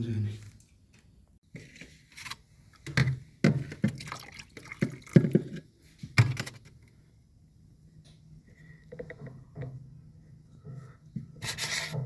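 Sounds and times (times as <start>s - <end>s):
water splashing and dripping: 3.8s - 5.4s.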